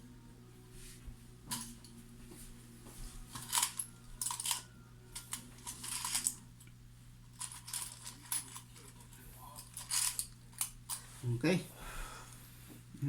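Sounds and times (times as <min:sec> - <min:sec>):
small metal parts clicking: 0:03.4 - 0:06.7, 0:07.3 - 0:11.0.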